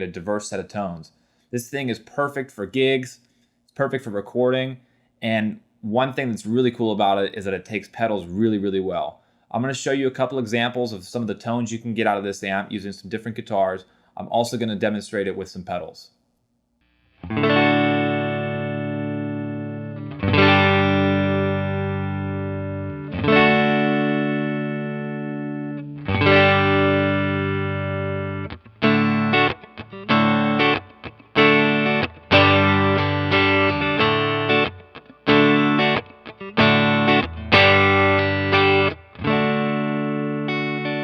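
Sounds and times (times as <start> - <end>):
electric guitar chords: 17.0 - 41.0.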